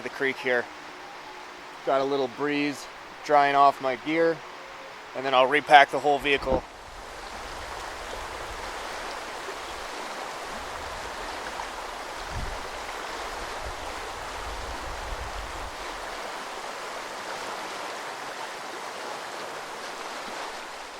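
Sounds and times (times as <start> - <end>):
creek rushing over rocks: 0.0 - 20.9
wind rumble on microphone: 6.2 - 16.5.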